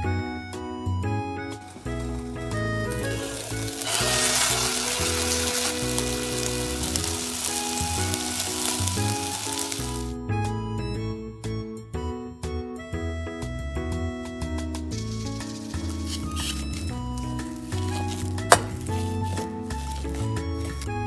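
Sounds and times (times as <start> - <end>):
background music: 0.0 - 21.0
food sizzling on a fire: 1.5 - 10.1, 14.9 - 21.0.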